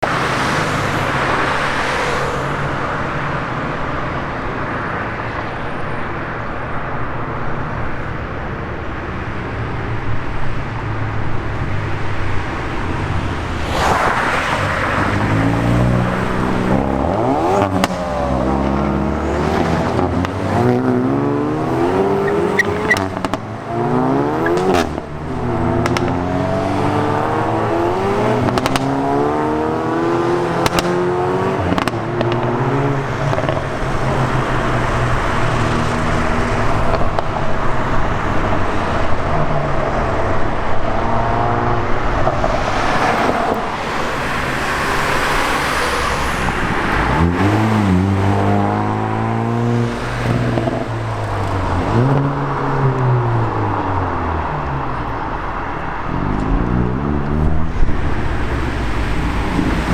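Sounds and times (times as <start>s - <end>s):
car engines revving: 0.0s - 59.9s
exhaust pops and crackles: 14.9s - 18.5s, 25.8s - 26.2s, 28.4s - 28.9s, 30.6s - 31.0s, 31.6s - 34.2s, 36.0s - 41.1s.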